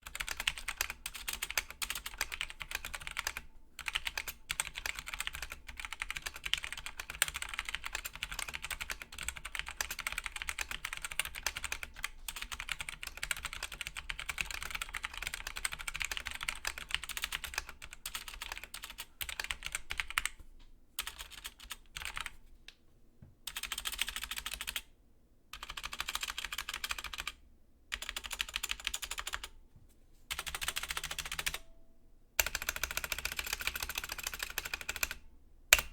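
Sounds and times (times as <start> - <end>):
mechanical keyboard typing: 0.0 - 20.4, 21.0 - 22.4, 23.5 - 24.9, 25.6 - 29.6, 30.3 - 31.7, 32.4 - 35.9.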